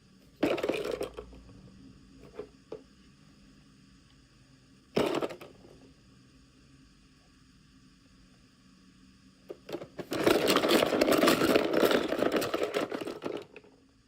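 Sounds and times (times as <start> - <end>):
plastic packaging clicking and rattling: 9.7 - 13.6.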